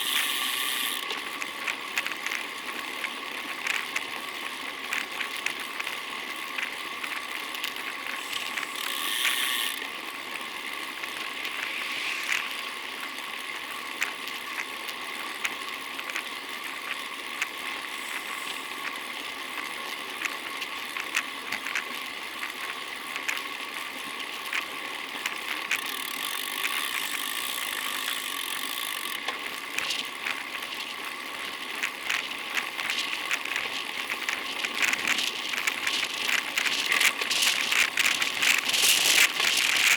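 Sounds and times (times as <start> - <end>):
bicycle freewheel ratchet ticking: 0.0 - 39.9
road and wind hiss: 10.3 - 14.0.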